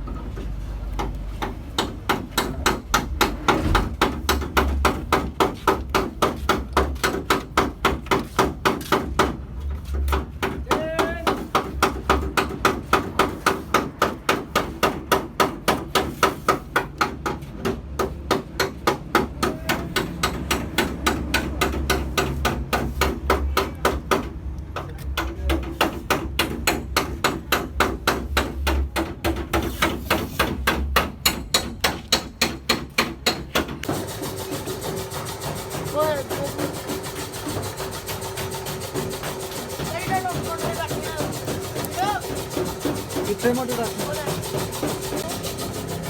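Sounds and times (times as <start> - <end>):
rapid hammer blows: 25.2 - 46.0.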